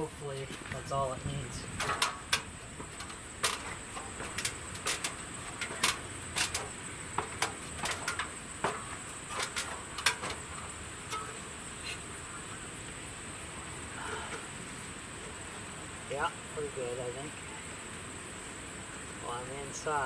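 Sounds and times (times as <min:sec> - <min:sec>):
sharp metallic clicks and knocks: 0:01.8 - 0:11.5.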